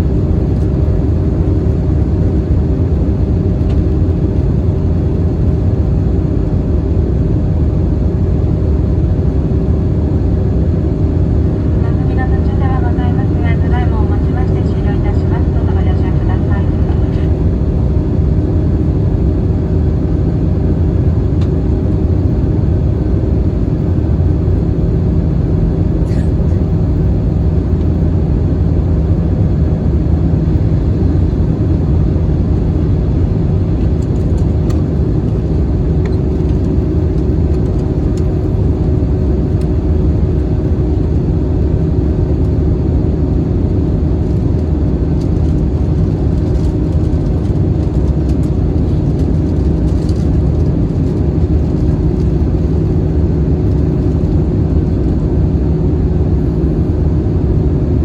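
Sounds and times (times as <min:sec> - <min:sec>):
airplane engine drone: 0:00.0 - 0:58.0
faint steady hum: 0:00.0 - 0:58.0
airflow along fuselage: 0:07.9 - 0:41.3.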